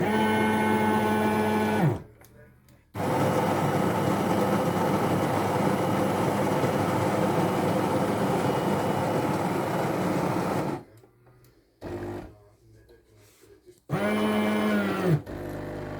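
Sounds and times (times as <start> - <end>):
espresso machine running: 0.0 - 2.0, 3.0 - 10.9, 13.9 - 15.9.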